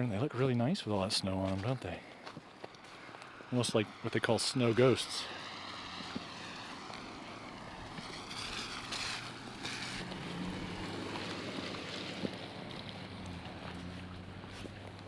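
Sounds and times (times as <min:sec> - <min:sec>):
wind buffeting microphone: 0:03.4 - 0:15.0.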